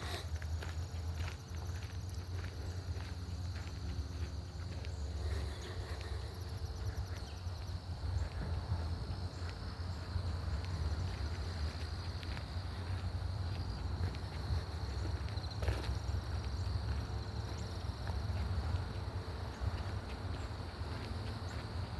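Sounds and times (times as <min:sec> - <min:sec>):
footsteps on trail: 0:00.0 - 0:21.9
high insect drone: 0:00.0 - 0:21.9.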